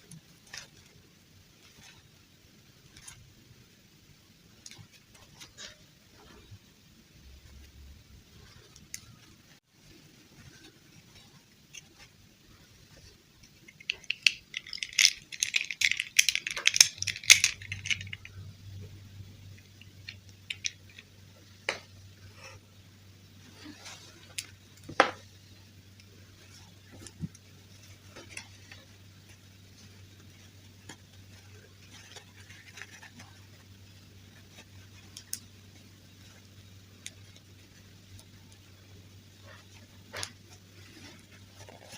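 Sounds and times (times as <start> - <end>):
faint low hum: 0.0 - 41.9
plastic toy pieces rattling: 13.5 - 18.4, 19.6 - 21.1.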